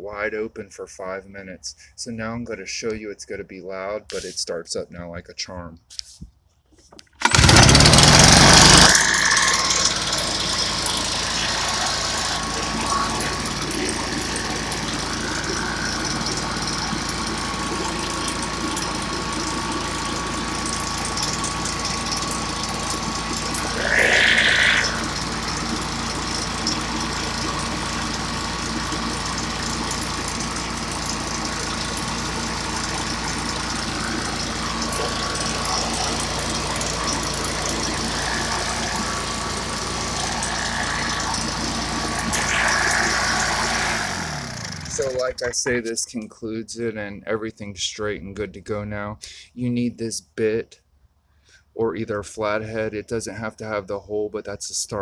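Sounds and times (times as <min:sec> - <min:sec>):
blower engine starting and idling: 0:07.2 - 0:45.8.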